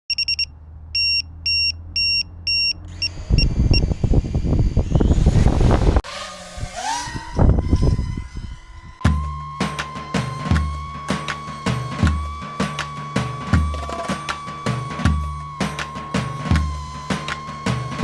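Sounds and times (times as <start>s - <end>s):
electronic beeps: 0.1s - 3.9s
quadcopter motors whining: 2.8s - 18.0s
wind buffeting: 2.9s - 9.0s.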